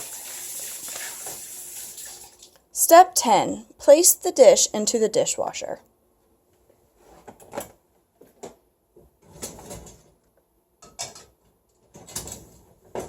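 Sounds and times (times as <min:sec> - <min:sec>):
dishware clattering against rack: 0:10.8 - 0:11.3.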